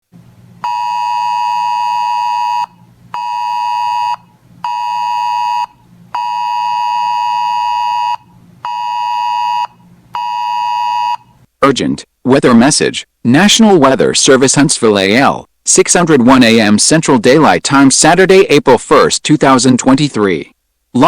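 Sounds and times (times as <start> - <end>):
weather radio alert beeps: 0.7 - 11.3.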